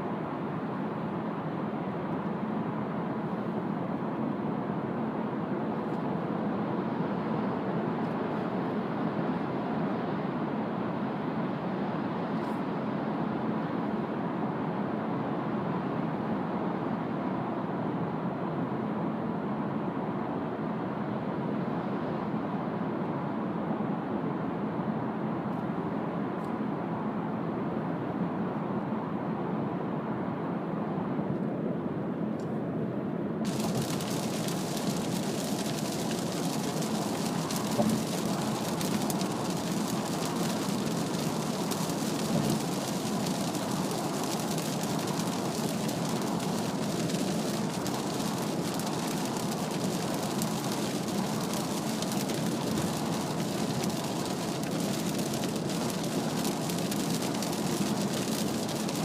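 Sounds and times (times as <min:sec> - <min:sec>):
rain on car body: 0:33.5 - 0:59.0
tyre and road noise on wet surface: 0:33.5 - 0:59.0.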